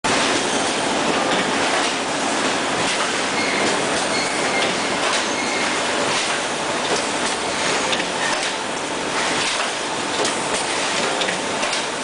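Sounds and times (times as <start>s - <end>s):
machine clacks: 1.0s - 12.0s.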